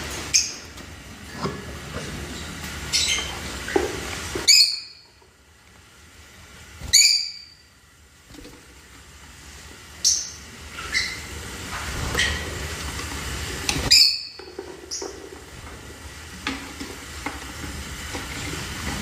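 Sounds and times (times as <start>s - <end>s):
budgerigars chirping: 6.9s - 7.6s.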